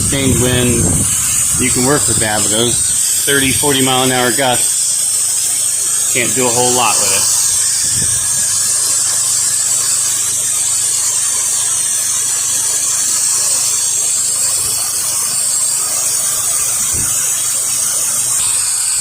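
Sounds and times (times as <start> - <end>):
wind buffeting microphone: 0.0 - 4.7, 5.9 - 10.7
engine humming: 0.0 - 19.0
pressure washer spray hissing: 0.0 - 19.0.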